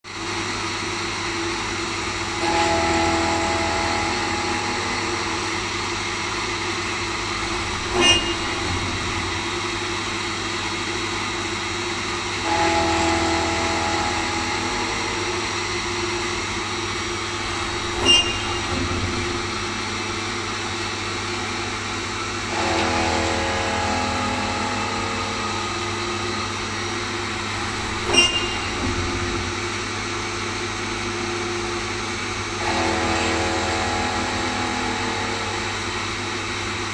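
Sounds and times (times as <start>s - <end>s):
machine hum: 2.4s - 36.9s
short sharp machine sound: 7.4s - 10.1s, 12.5s - 20.2s, 22.6s - 31.2s.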